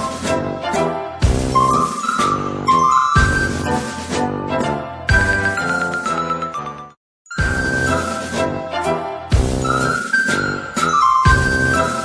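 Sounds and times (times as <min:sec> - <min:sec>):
whistle-like melody over a beat: 0:00.0 - 0:04.1, 0:07.3 - 0:12.0.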